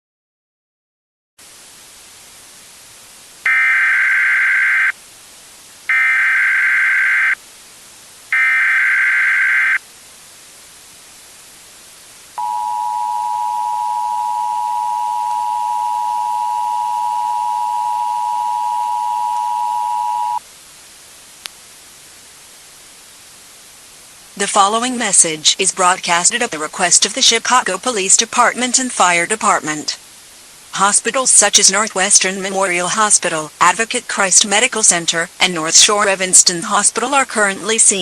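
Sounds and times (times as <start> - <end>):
static hiss: 1.4 - 38.0
two-tone attention signal: 3.5 - 4.9, 12.4 - 20.4
data tone bursts: 3.5 - 5.0, 5.9 - 7.4, 8.3 - 9.8, 12.4 - 20.4.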